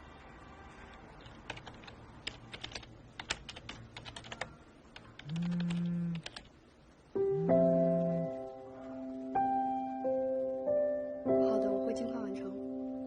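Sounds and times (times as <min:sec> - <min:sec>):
computer keyboard typing: 0:01.2 - 0:06.5.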